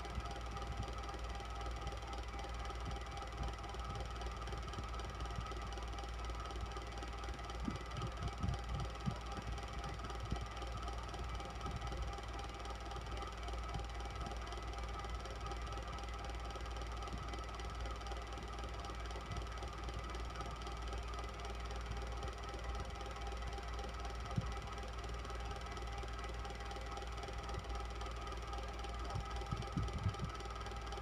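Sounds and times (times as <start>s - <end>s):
electric fan humming: 0.0s - 14.5s, 21.7s - 31.0s.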